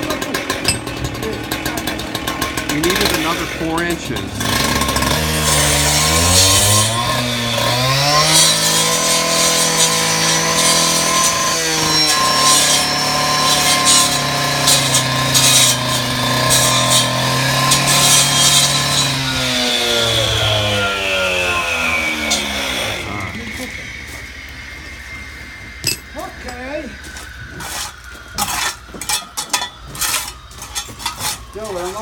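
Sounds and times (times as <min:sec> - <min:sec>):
cut-off saw cutting masonry: 0:00.0 - 0:32.0.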